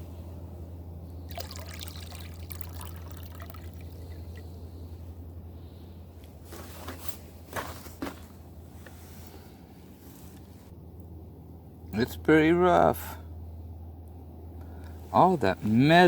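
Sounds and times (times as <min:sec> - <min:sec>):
low hum: 0:00.0 - 0:06.5
water swishing in a pan: 0:01.3 - 0:04.6.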